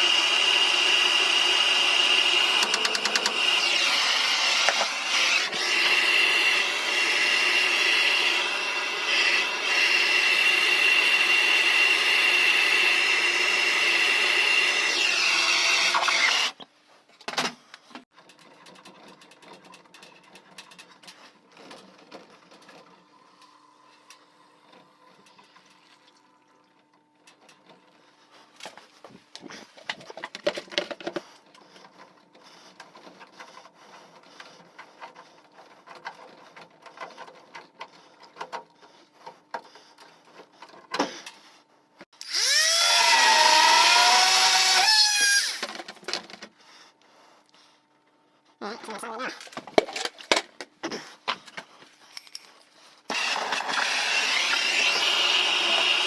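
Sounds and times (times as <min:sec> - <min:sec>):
small power tool motor: 0:00.0 - 0:16.6, 0:42.2 - 0:45.8, 0:53.1 - 0:56.0
clicks and scraping: 0:02.1 - 0:06.0, 0:27.3 - 0:41.4, 0:49.2 - 0:56.0.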